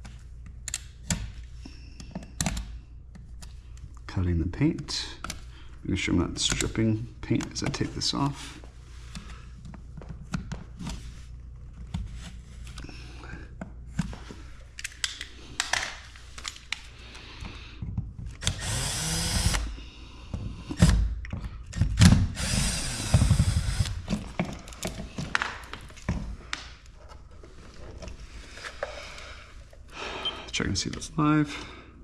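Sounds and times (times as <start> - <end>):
power drill running: 18.4 - 19.6, 22.4 - 24.0, 25.5 - 26.1.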